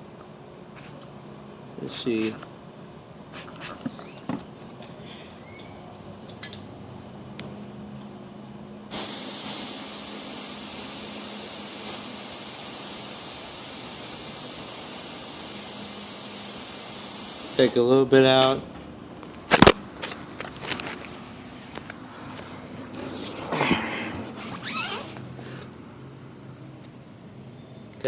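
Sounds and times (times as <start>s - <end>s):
pressurised spray hiss: 8.9s - 17.8s.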